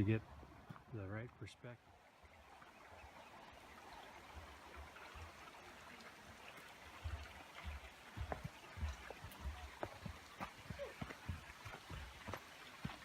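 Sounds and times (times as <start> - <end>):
faint rushing water: 0.0 - 13.0.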